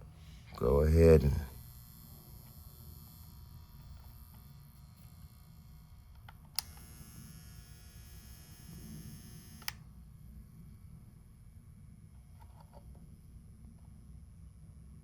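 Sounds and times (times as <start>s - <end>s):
soldering gun buzzing: 0.0s - 10.2s
low steady hum: 0.0s - 15.0s
soldering gun trigger click: 1.2s - 9.8s.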